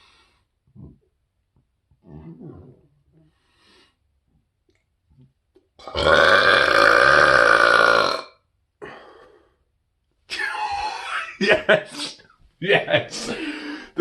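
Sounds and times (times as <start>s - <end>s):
man burping loudly: 5.8s - 8.4s.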